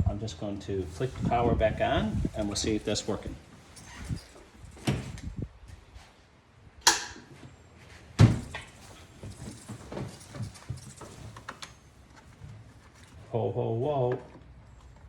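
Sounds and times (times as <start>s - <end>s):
rustling: 7.8s - 13.4s.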